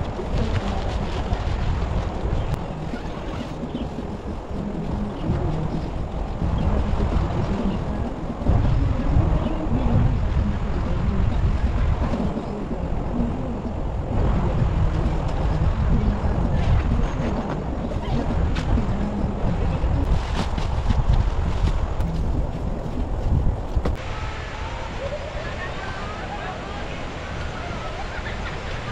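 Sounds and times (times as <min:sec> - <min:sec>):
wind buffeting microphone: 0:00.0 - 0:28.9.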